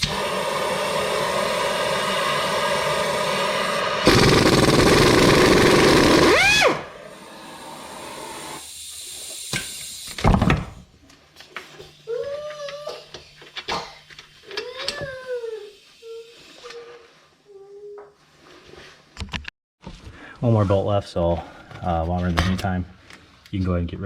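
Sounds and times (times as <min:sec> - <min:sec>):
pneumatic tool hammering: 0:04.0 - 0:08.6.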